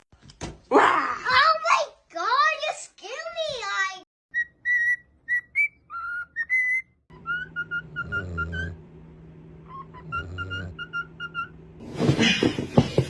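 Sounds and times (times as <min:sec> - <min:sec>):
parrot whistling: 0:04.3 - 0:08.8, 0:09.6 - 0:11.6.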